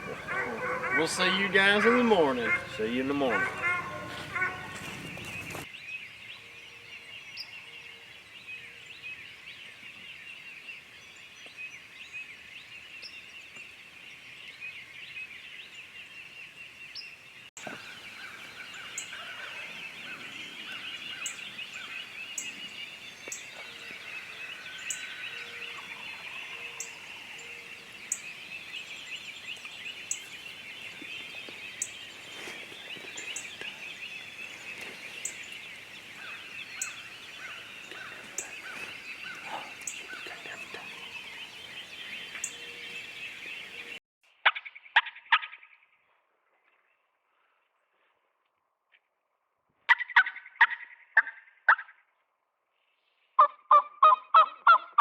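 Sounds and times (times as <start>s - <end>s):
chorus of rapid high chirps: 0.0s - 5.6s
sharp high bird calls: 0.0s - 5.7s, 17.6s - 44.0s
turkey gobbling: 0.0s - 5.7s, 29.7s - 43.9s, 53.4s - 55.0s.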